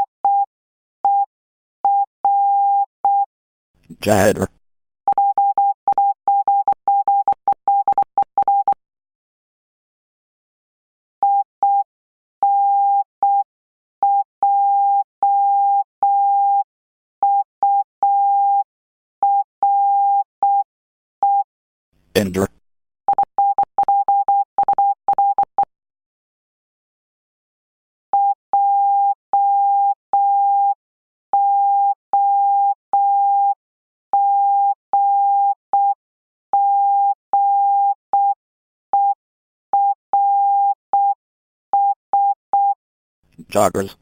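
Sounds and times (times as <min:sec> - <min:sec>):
morse code beeps: 0:39.8 - 0:41.2.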